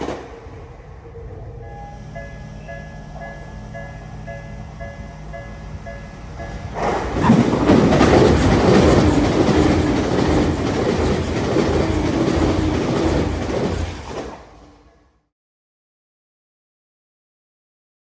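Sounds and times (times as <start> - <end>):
train wheels clattering on rails: 0.0 - 1.1, 4.8 - 14.8.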